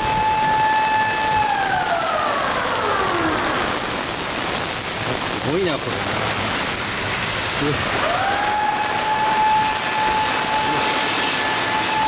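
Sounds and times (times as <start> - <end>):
siren rising in pitch: 0.0 - 3.9, 8.0 - 12.0
rain hiss: 0.0 - 12.0.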